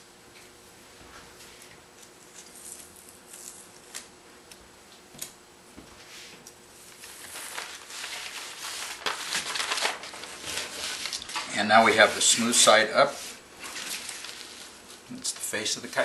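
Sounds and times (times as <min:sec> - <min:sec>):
sheet rustling: 0:06.9 - 0:15.6.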